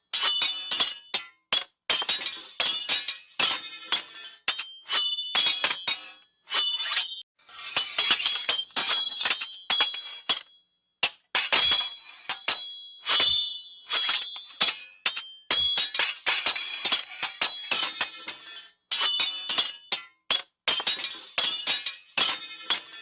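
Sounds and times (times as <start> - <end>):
metal blades clashing: 0.0 - 23.0
blade scraping on blade: 2.1 - 10.4, 13.1 - 19.7.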